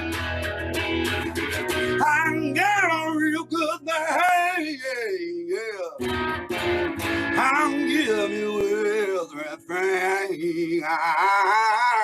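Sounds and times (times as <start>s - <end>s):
acoustic guitar strumming: 0.0s - 12.0s
man singing wavering notes: 1.9s - 6.0s, 7.4s - 12.0s.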